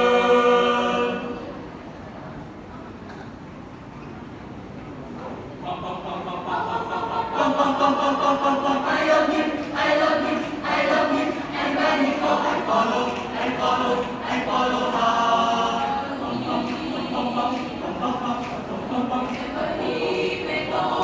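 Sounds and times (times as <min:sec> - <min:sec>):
choir singing in harmony: 0:00.0 - 0:01.8, 0:05.6 - 0:21.0.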